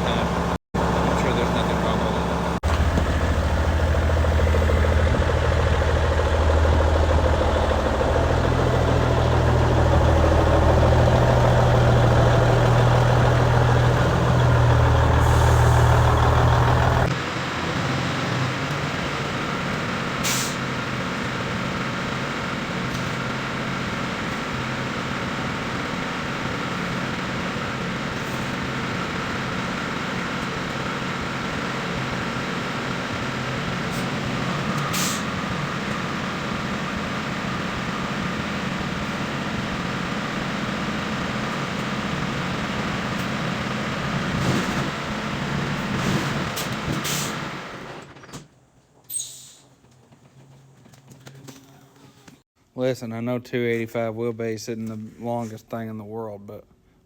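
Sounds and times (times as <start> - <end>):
diesel truck engine running: 0.0 - 48.2
truck air brake hisses: 15.1 - 16.2, 20.2 - 20.6, 34.9 - 35.3, 49.1 - 49.7.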